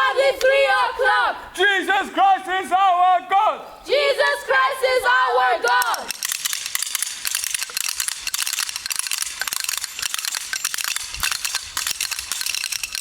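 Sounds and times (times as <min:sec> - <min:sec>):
wooden clappers and ratchets rattling: 0:05.7 - 0:13.0.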